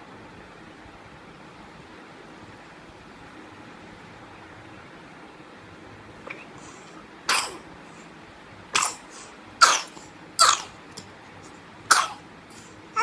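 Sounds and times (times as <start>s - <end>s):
boy coughing: 8.8s - 10.8s, 11.9s - 13.0s.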